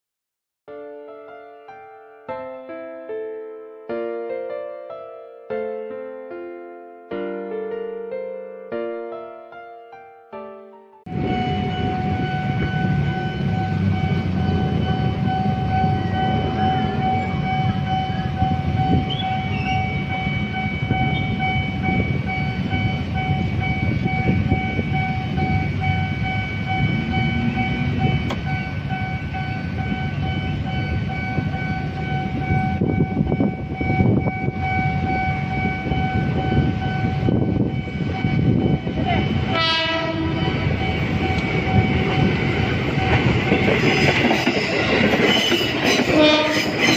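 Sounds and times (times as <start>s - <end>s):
steady high ringing tone: 11.1s - 46.1s
train horns: 11.1s - 46.9s
train wheels and motors rumbling: 11.1s - 46.9s.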